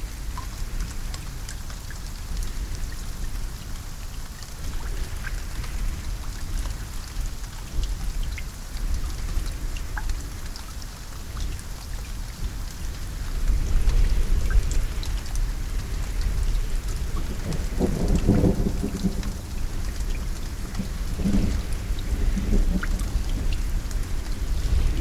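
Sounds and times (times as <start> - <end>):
raindrops ticking on a surface: 0.0 - 25.0
steady rain falling: 0.0 - 25.0
distant thunder rumble: 16.0 - 25.0.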